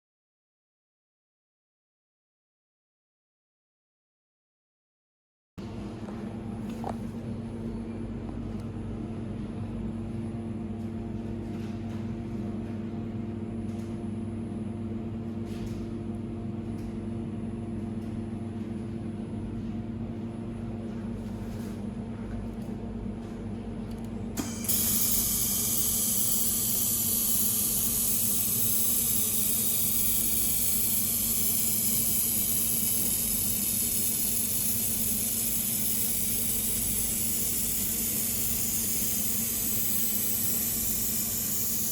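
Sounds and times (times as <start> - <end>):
welding machine hum: 24.0 - 41.9
loud steady hiss: 24.6 - 41.9.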